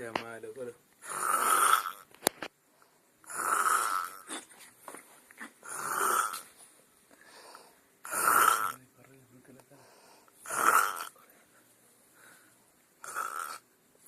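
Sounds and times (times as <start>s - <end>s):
man snoring: 1.0s - 2.0s, 3.2s - 4.2s, 5.6s - 6.4s, 8.0s - 8.8s, 10.4s - 11.2s, 13.0s - 13.7s.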